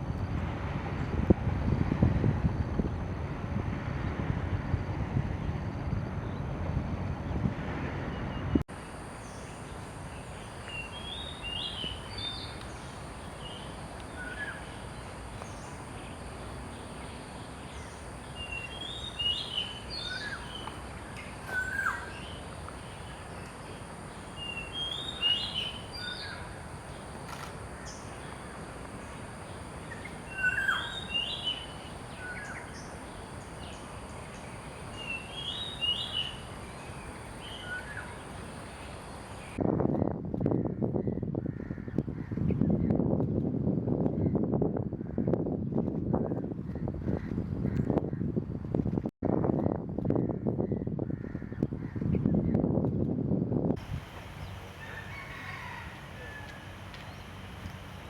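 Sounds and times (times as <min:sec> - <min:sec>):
songbird singing: 0:08.1 - 0:40.1, 0:54.2 - 0:58.0
steady background hiss: 0:08.7 - 0:39.6, 0:53.8 - 0:58.0.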